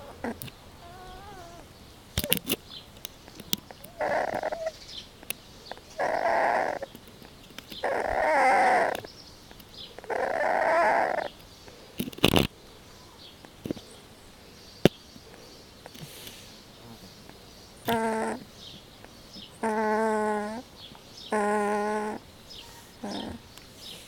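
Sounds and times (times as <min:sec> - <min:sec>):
puppy snoring: 0:00.0 - 0:02.4, 0:03.6 - 0:04.8, 0:05.7 - 0:06.9, 0:07.8 - 0:09.1, 0:10.0 - 0:11.4, 0:17.8 - 0:18.5, 0:19.4 - 0:24.0.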